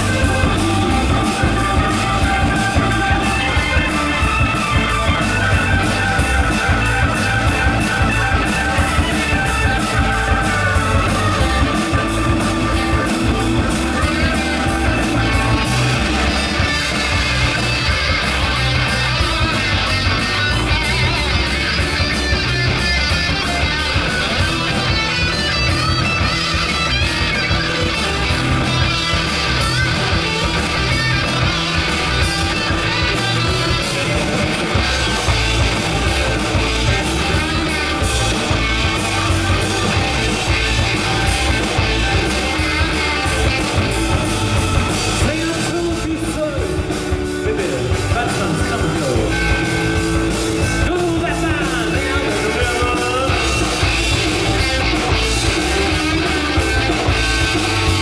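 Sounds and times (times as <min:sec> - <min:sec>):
rock music with guitars and drums: 0:00.0 - 0:58.0
person singing: 0:50.8 - 0:57.4.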